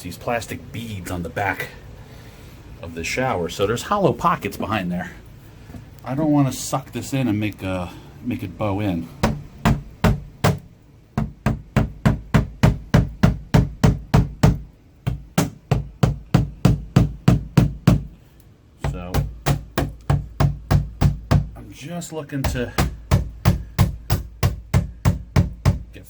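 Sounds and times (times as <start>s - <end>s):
hammer tapping on wall anchor: 9.2s - 18.2s, 18.8s - 21.6s, 22.4s - 26.0s.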